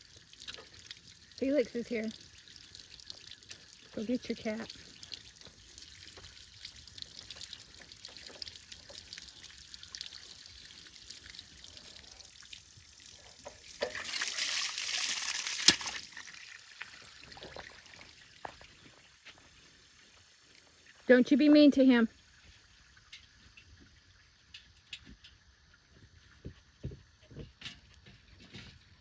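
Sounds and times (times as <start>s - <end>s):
water pouring: 0.0s - 19.2s
water trickling: 0.0s - 27.2s.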